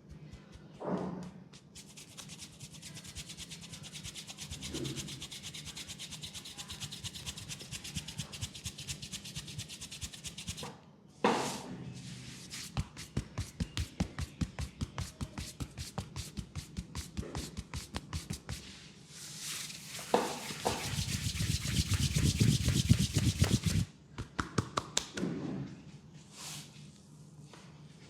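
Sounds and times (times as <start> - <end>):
hands rubbing over skin: 19.3 - 23.9.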